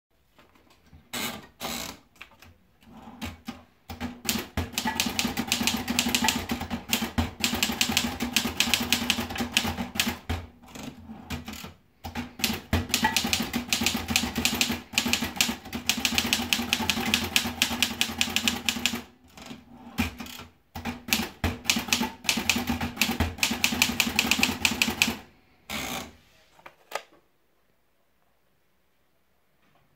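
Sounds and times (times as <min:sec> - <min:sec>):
typewriter keys clacking: 0:04.0 - 0:19.1, 0:20.0 - 0:25.2.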